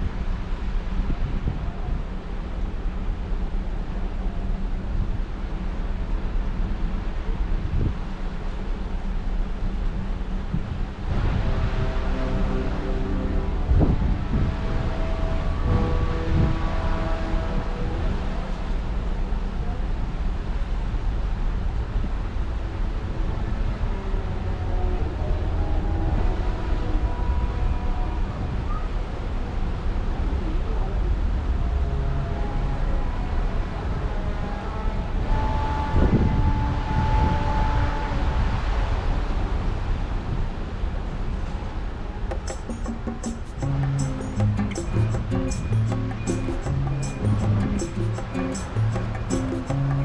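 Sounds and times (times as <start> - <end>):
ship low rumble: 10.6 - 19.1.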